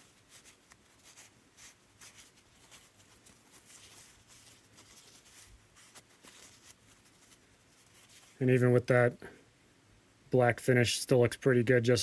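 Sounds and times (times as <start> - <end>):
light rubbing and scratching: 0.0 - 8.7.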